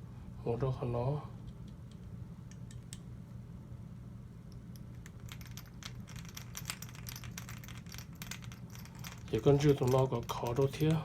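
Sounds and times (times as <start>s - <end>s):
low steady hum: 0.0s - 11.0s
small metal parts clicking: 4.5s - 11.0s.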